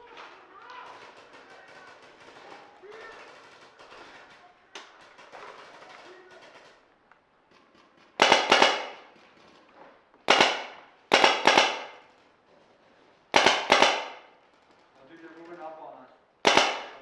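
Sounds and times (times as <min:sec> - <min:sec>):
paintball marker firing: 0:07.6 - 0:12.1, 0:13.3 - 0:14.4, 0:16.4 - 0:17.0.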